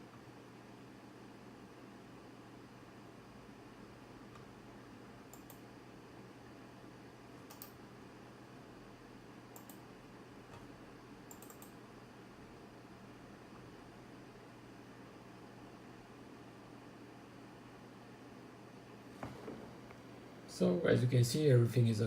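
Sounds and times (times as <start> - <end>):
low hum and hiss: 0.0 - 22.0
faint sharp clicks: 5.3 - 5.6, 7.4 - 7.8, 9.6 - 9.8, 11.3 - 11.8.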